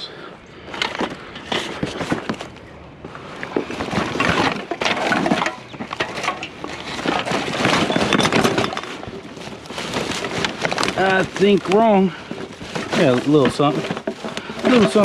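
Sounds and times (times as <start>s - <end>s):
rustling: 0.6s - 15.0s
junk rattling and knocking: 3.4s - 15.0s.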